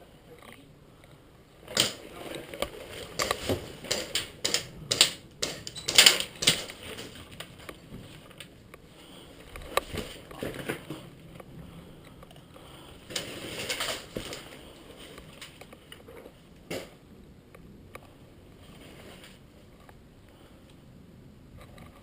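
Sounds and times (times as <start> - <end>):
rustling: 1.7 - 17.0, 18.1 - 20.6
clicks and knocks: 2.6 - 7.8.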